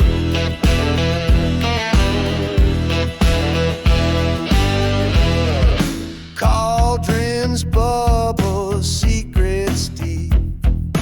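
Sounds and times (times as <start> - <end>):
bass and drums beat: 0.0 - 11.0
blues-rock guitar: 0.0 - 11.0.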